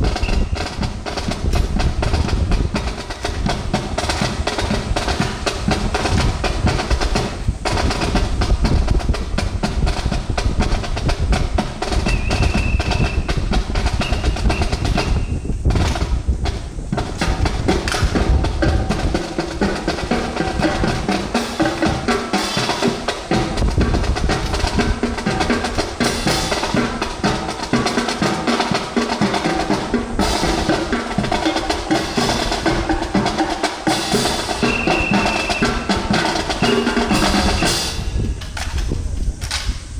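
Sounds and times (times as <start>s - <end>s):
snare and bass drums: 0.0s - 39.9s
drum rim clicks: 17.1s - 39.9s.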